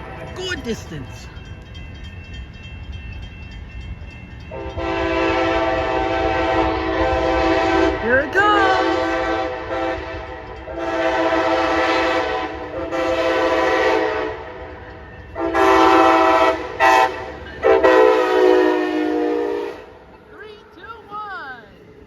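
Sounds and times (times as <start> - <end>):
low train rumble: 0.0 - 22.0
locomotive air horn blasts: 4.6 - 14.6, 15.4 - 20.0.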